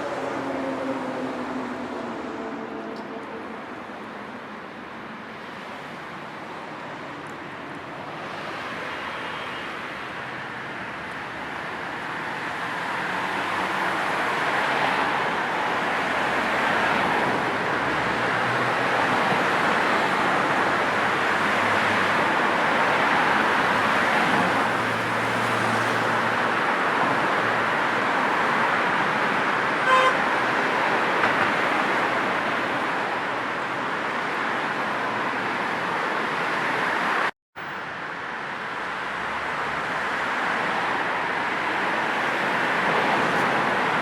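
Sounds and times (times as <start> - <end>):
road traffic passing: 0.0 - 44.0
car horn toot: 29.8 - 30.2.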